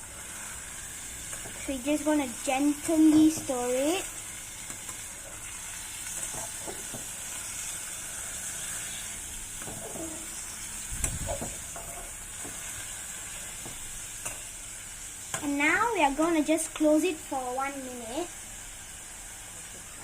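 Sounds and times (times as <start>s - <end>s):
food sizzling in a pan: 0.0s - 20.0s
spatula scraping a pan: 4.9s - 14.4s.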